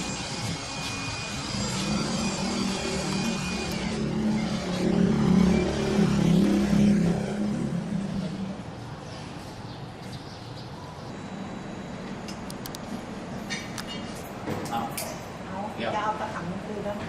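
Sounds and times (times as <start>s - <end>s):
motor humming: 0.0s - 8.5s.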